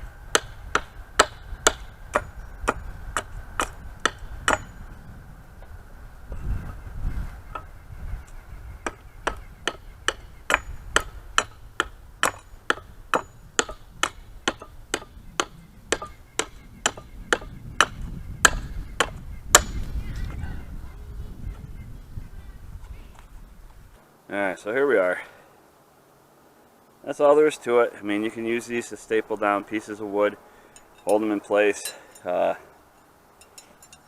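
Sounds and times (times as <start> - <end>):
hammer striking steel: 9.3 - 19.9.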